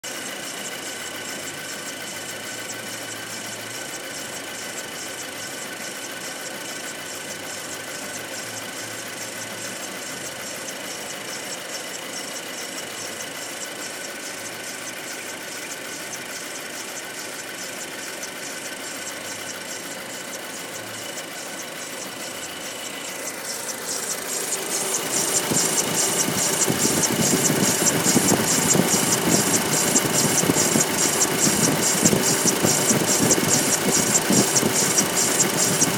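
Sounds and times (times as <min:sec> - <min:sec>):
car engine idling: 0:00.1 - 0:35.9
steady high-pitched whine: 0:11.8 - 0:35.9
rapid even clacking: 0:22.6 - 0:35.9.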